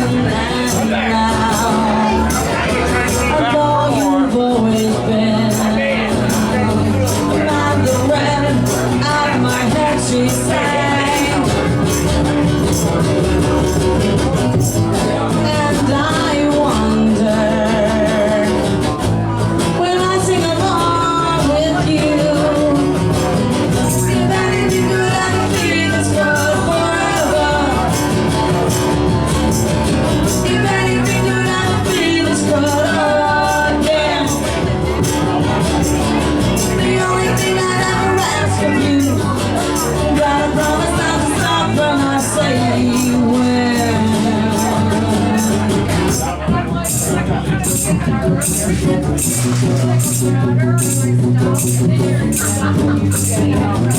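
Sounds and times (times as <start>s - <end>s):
lead singer singing: 0.0s - 13.3s, 14.6s - 47.0s
bass guitar: 0.0s - 53.9s
drums: 0.0s - 53.9s
rock band playing live: 0.0s - 53.9s.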